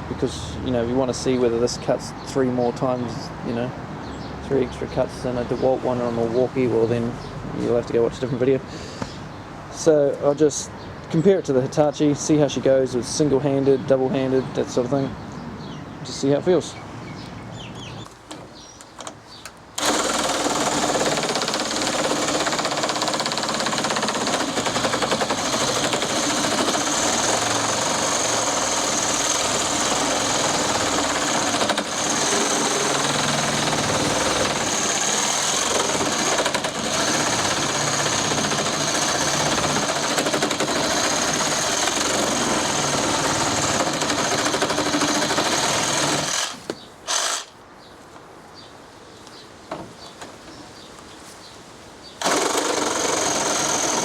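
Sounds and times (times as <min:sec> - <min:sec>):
reciprocating saw cutting wood: 0:19.8 - 0:47.6, 0:52.2 - 0:54.0.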